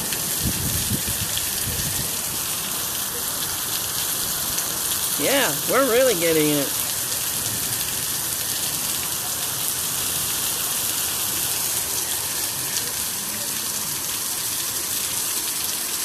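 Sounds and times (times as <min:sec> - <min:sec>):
heavy rain pouring: 0:00.0 - 0:16.0.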